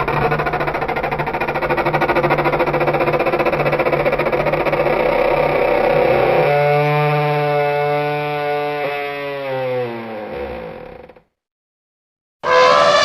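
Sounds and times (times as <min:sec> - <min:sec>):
low rattling creature growl: 0:00.0 - 0:11.0
held pitched creature call: 0:12.4 - 0:13.0.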